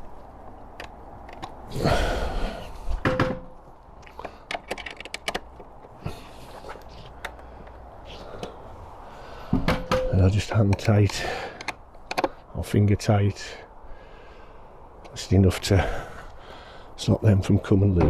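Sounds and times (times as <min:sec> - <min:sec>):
clicks and knocks of bolts: 0:03.0 - 0:06.0, 0:09.5 - 0:12.4.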